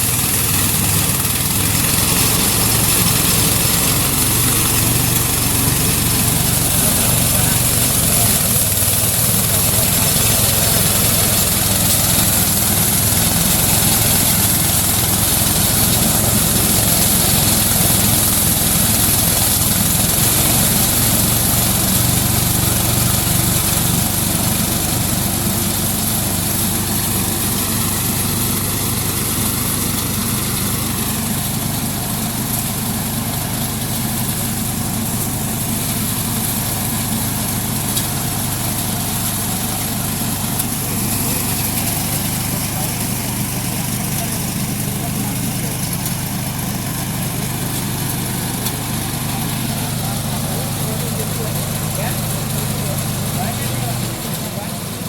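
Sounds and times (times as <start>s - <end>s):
thresher engine drone: 0.0s - 55.0s.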